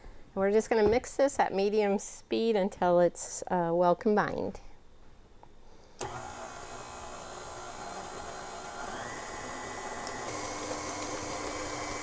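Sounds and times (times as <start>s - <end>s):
electric mixer beating batter: 6.0s - 12.0s.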